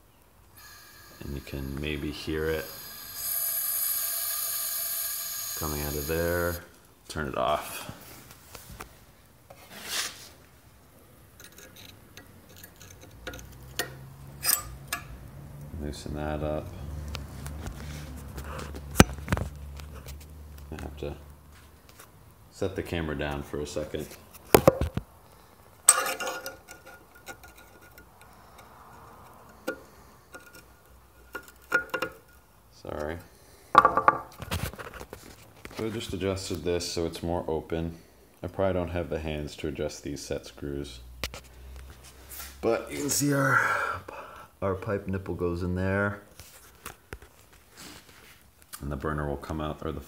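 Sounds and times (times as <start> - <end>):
metal fittings clicking and rubbing: 11.4 - 15.2, 25.9 - 32.4.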